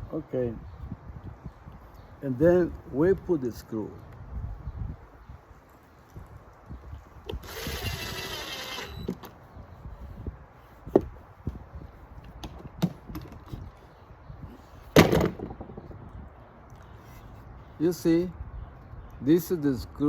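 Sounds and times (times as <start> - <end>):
power drill driving a screw: 7.3 - 9.2.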